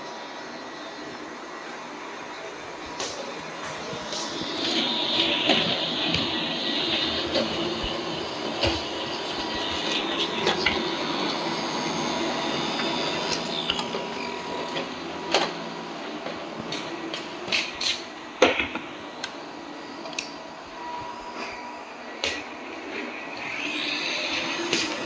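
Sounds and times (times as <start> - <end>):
robot vacuum motor hum: 0.2 - 17.1, 22.7 - 25.0.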